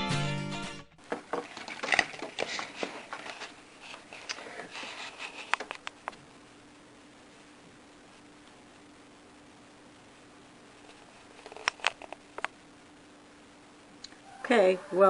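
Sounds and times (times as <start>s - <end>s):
music: 0.0s - 1.0s
objects clicking and knocking: 1.0s - 3.5s
faint steady hum: 1.0s - 15.0s.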